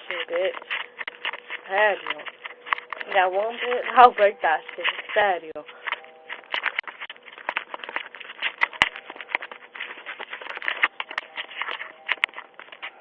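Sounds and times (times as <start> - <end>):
scratching and tapping on microphone: 0.0 - 13.0.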